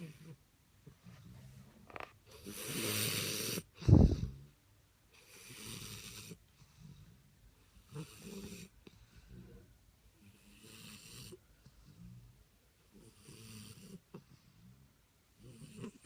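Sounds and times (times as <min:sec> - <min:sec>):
puppy snoring: 0:00.0 - 0:04.6, 0:05.2 - 0:16.0
puppy breathing: 0:02.4 - 0:04.4.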